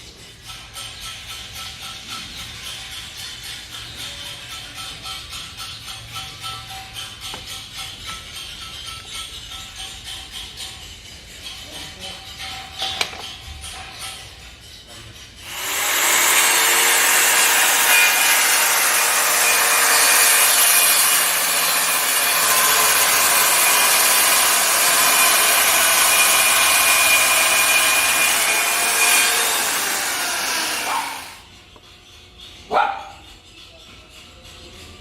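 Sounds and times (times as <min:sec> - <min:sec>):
circular saw cutting wood: 0:15.4 - 0:31.5.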